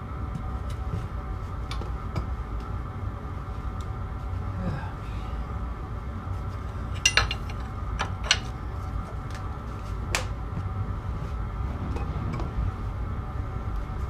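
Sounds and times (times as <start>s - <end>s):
steady low rumble: 0.0s - 14.0s
metal objects clinking: 7.0s - 7.6s.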